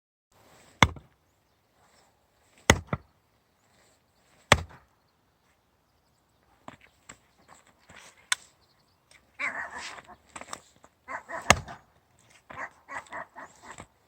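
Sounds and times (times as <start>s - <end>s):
axe chopping firewood: 0.7s - 1.2s, 2.5s - 3.1s, 4.4s - 4.9s, 11.3s - 13.1s.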